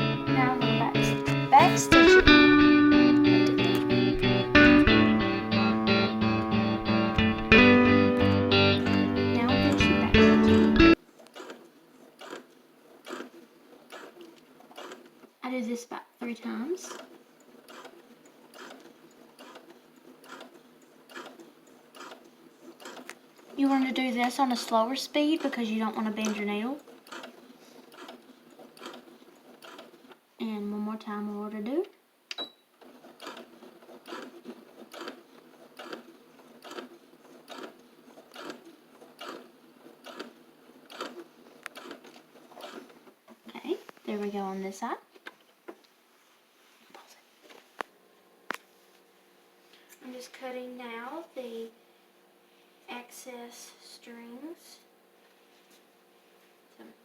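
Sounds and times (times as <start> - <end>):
sewing machine stitching: 8.8 - 15.4, 16.6 - 30.2, 32.7 - 43.9.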